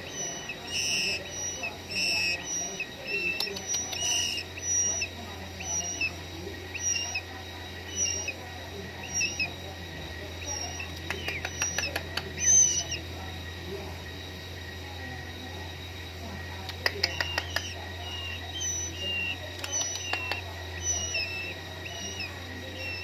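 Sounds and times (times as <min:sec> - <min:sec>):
sharp clicks: 0:00.0 - 0:06.2, 0:10.6 - 0:13.0, 0:16.6 - 0:23.0
nestlings begging calls: 0:00.0 - 0:23.0.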